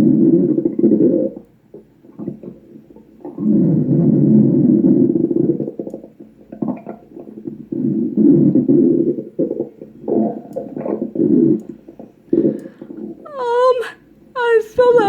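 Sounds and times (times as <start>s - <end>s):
stomach growling: 0.0s - 13.2s
faint stomach gurgles: 0.0s - 15.0s.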